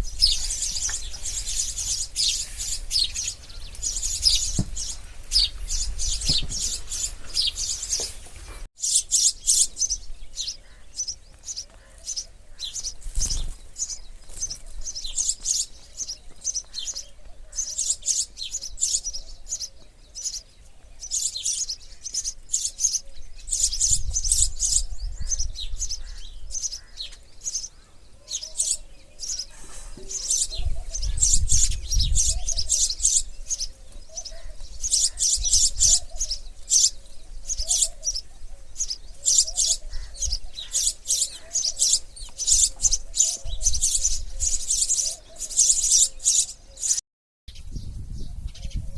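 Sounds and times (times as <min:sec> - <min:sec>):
sparrows chirping: 0:00.0 - 0:48.9.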